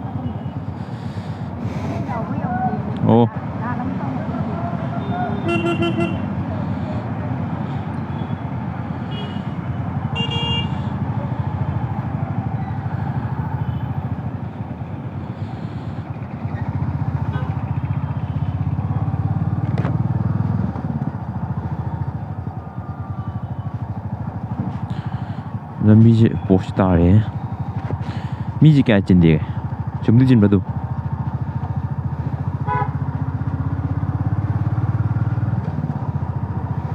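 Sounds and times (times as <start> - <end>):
motorcycle engine running: 0.0 - 36.9
short horn beep: 5.0 - 6.3.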